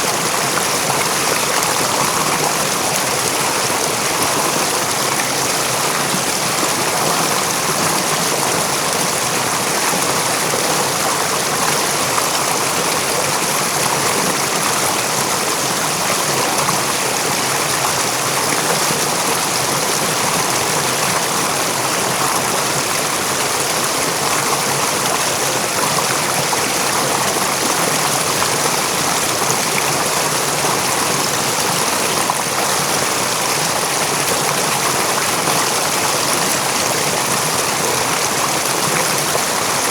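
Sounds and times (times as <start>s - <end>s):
river water rushing over rocks: 0.0s - 39.9s.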